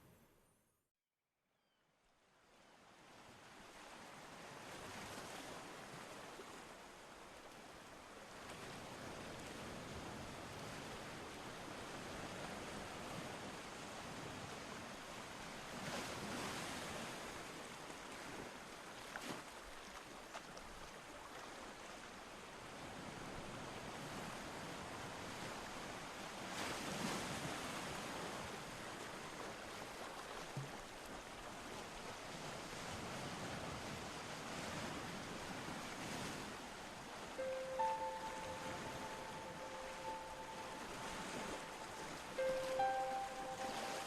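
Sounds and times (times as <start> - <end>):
ocean waves washing: 22.6 - 44.0.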